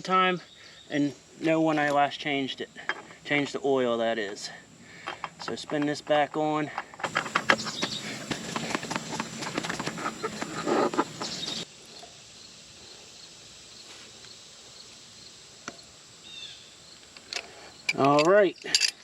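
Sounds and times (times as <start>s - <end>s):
oil filter scraping and clicking: 5.0s - 11.6s
faint bird chirps: 7.2s - 13.3s.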